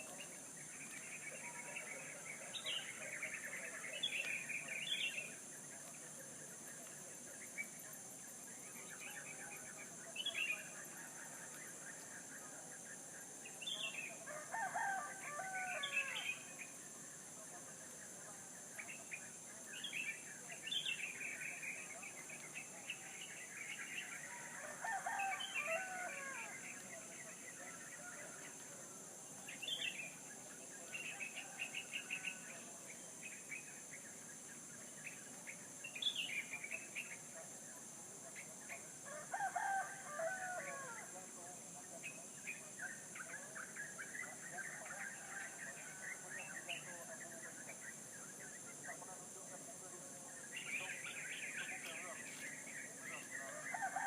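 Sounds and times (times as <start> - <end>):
small birds chirping: 0.0 - 54.0
rooster crowing: 14.3 - 16.3, 24.2 - 26.6, 39.1 - 41.0, 53.5 - 54.0.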